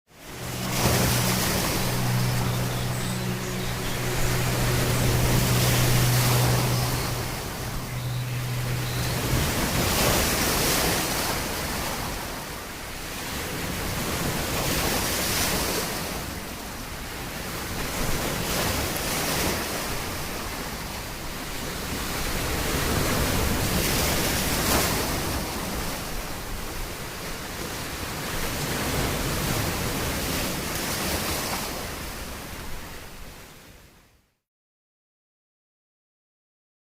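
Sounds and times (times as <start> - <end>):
low steady hum: 0.1 - 12.2
ocean waves washing in: 0.1 - 34.0.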